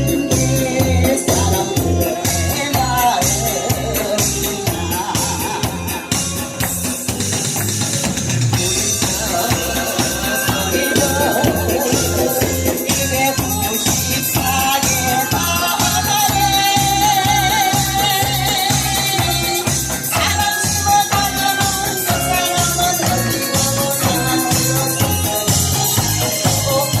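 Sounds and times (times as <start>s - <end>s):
person singing: 0.0s - 7.3s, 8.5s - 27.0s
steady drum beat: 0.0s - 27.0s
tambourine: 8.5s - 27.0s.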